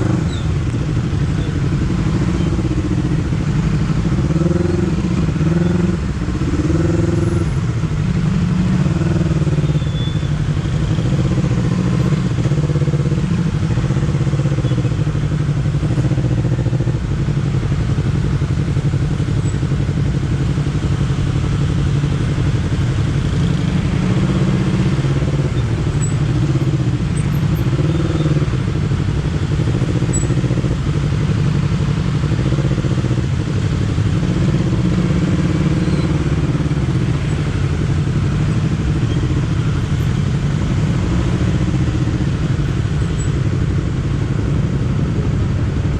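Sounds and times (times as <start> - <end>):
motorcycle engine revving: 0.0 - 45.9.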